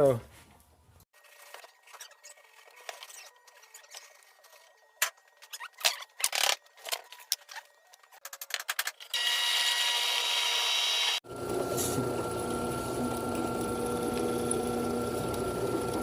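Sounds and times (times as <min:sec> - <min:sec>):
tools and metal parts clicking: 0:05.4 - 0:09.1.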